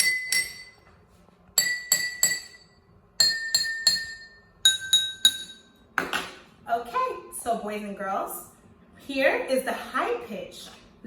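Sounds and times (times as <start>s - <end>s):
spoon tapping water glasses: 0.0s - 0.8s, 1.6s - 6.2s.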